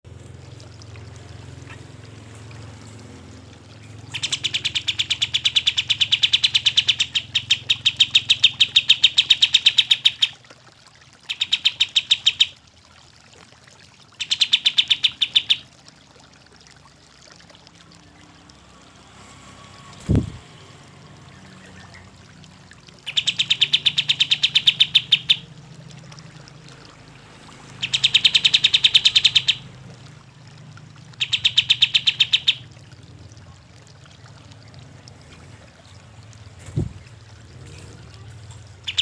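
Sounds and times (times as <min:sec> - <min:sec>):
songbird rattling call: 0:03.9 - 0:10.4, 0:11.3 - 0:12.6, 0:14.2 - 0:15.7, 0:23.0 - 0:25.5, 0:27.8 - 0:29.8, 0:31.2 - 0:32.7, 0:38.5 - 0:39.0.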